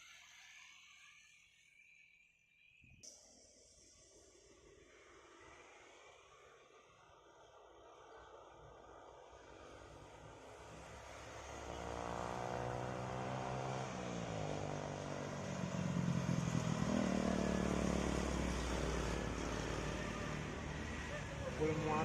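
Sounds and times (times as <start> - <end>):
truck diesel engine labouring: 10.6 - 22.0.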